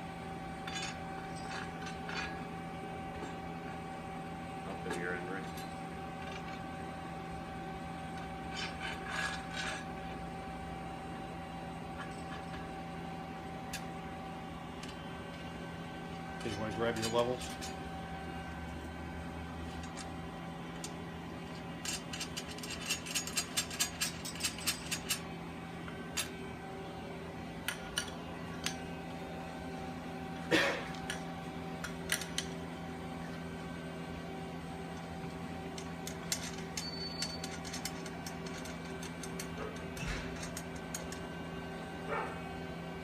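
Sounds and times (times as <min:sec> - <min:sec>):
steady low hum: 0:00.0 - 0:43.0
tools clinking and tapping: 0:35.8 - 0:41.2.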